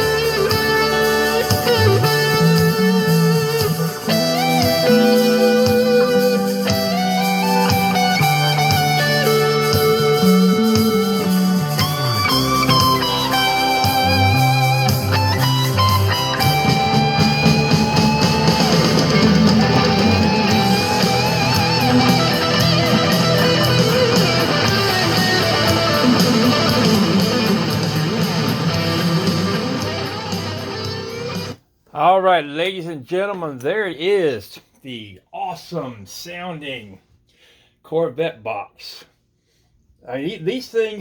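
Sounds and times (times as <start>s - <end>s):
bass and drums: 0.0s - 31.6s
lead electric guitar bending notes: 0.0s - 31.6s.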